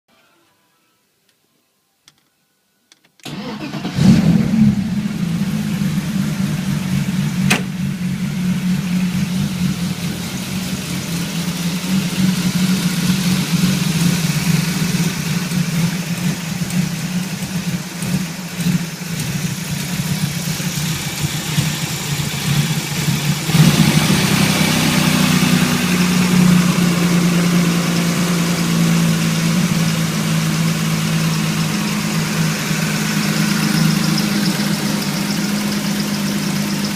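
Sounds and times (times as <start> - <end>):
car engine idling with misfire: 3.3 - 36.9
sharp click: 7.5 - 7.7.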